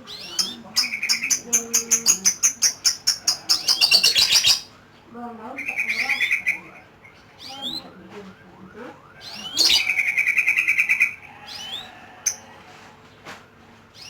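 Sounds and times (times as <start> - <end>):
lovebird chattering trill: 0.0 - 4.7, 5.5 - 7.9, 9.2 - 12.4.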